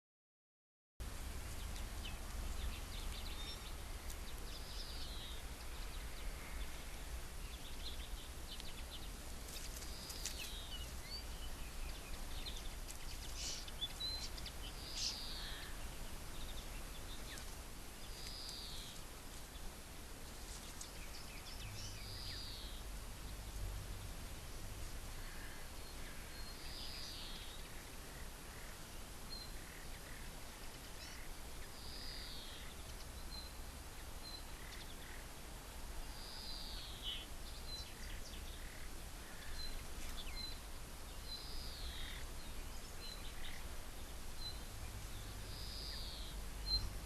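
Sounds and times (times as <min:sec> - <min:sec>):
small chirps and ticks: 0:01.4 - 0:24.0.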